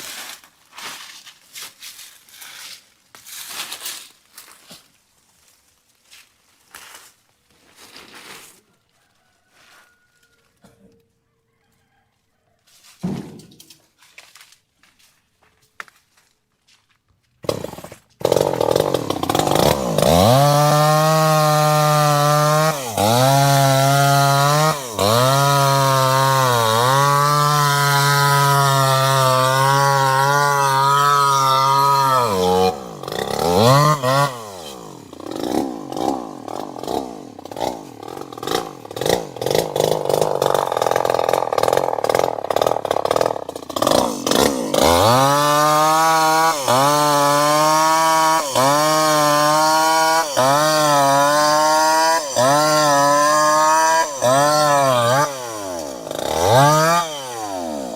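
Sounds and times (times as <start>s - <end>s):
chainsaw engine: 17.4s - 57.9s.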